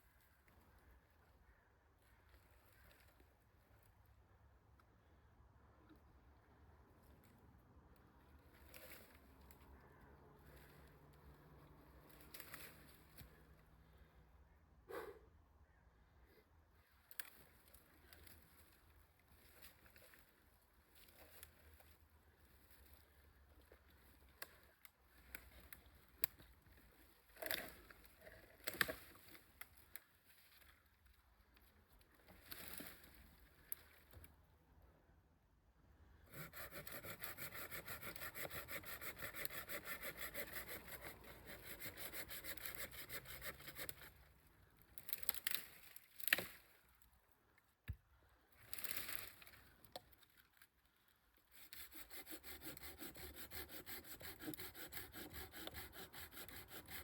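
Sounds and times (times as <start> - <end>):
hand saw cutting wood: 36.3 - 44.2, 51.5 - 57.0.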